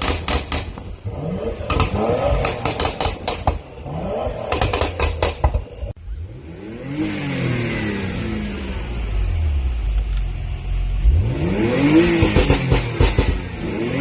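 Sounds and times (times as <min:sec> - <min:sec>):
car engine revving: 0:01.0 - 0:14.0
exhaust pops and crackles: 0:01.7 - 0:03.8, 0:12.2 - 0:13.5.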